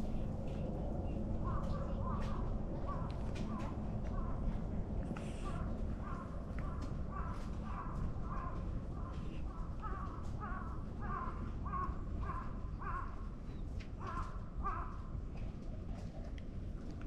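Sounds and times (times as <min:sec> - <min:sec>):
crow cawing: 0:05.4 - 0:13.2, 0:14.0 - 0:15.0.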